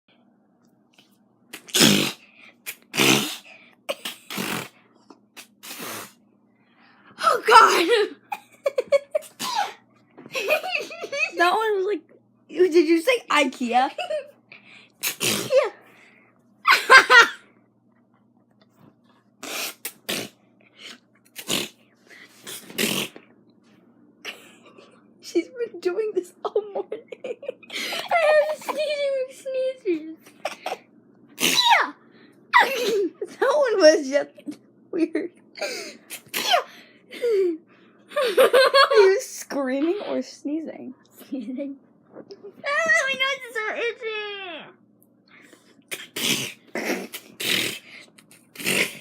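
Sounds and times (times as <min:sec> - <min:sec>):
woman sneezing: 0:07.2 - 0:08.2, 0:09.3 - 0:09.8, 0:31.4 - 0:33.2, 0:36.0 - 0:36.7.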